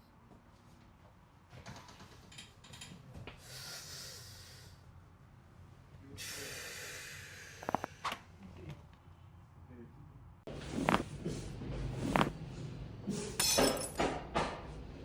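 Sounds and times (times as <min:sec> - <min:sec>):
deep hissing breaths: 0:03.4 - 0:04.9, 0:06.1 - 0:08.1.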